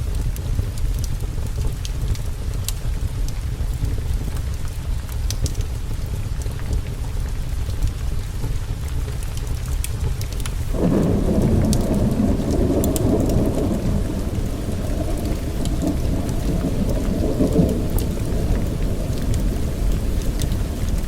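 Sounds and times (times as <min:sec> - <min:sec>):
heavy rain: 0:00.0 - 0:21.0
sharp crackles and ticks: 0:00.1 - 0:21.0
thunder rumbling: 0:10.5 - 0:21.0.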